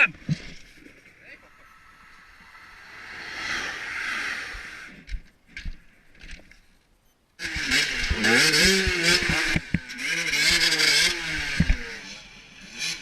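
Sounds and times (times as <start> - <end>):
motorcycle engine revving: 7.4 - 13.0.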